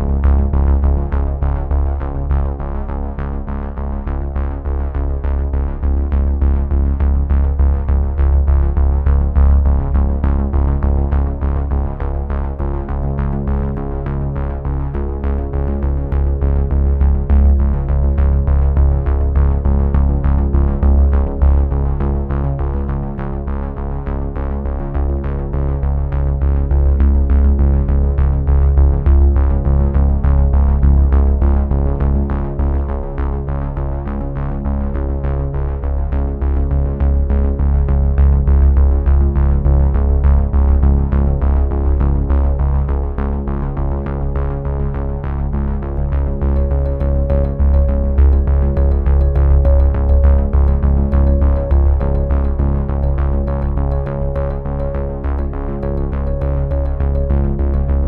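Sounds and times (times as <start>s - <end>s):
heavy bass: 0.0s - 34.6s, 35.4s - 58.0s
synthesizer chords: 46.4s - 58.0s
sharp synthesizer notes pulsing: 46.5s - 58.0s.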